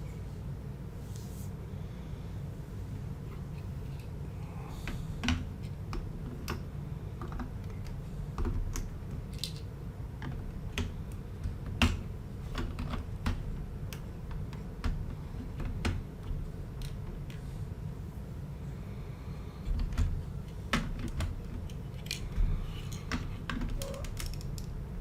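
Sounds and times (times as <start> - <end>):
plastic bricks clicking: 7.2 - 10.9, 22.9 - 24.8.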